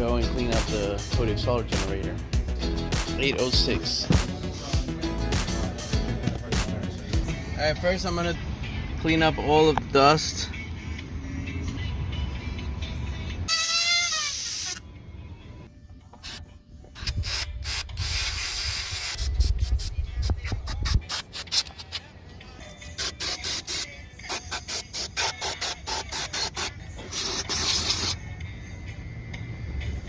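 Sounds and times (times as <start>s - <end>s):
air duster spraying: 23.0s - 28.2s.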